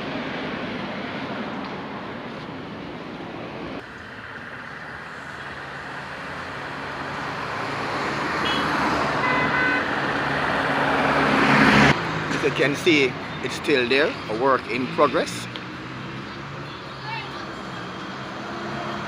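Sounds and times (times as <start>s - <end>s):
road traffic noise: 0.0s - 19.0s.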